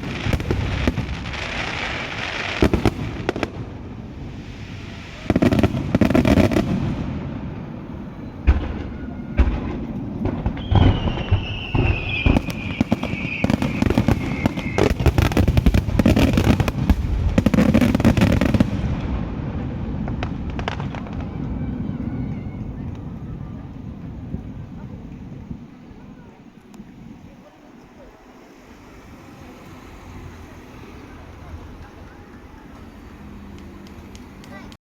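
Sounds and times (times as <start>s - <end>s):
fireworks booms: 0.0s - 28.2s, 30.4s - 34.8s
fireworks crackling and popping: 0.0s - 34.8s
falling whistle: 10.6s - 15.4s.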